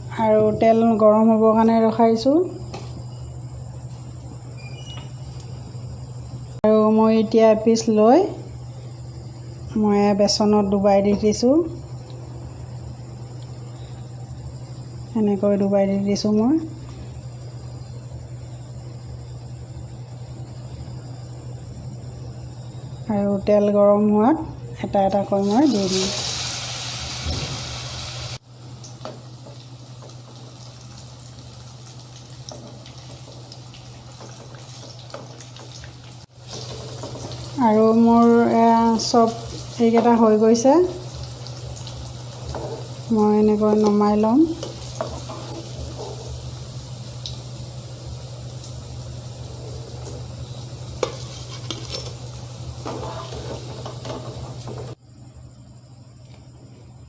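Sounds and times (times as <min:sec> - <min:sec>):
food deep-frying in oil: 0:25.0 - 0:55.0.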